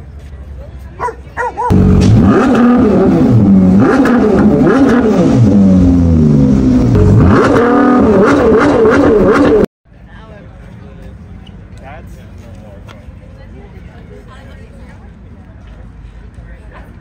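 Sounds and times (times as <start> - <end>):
sports car engine revving: 1.7 - 9.7.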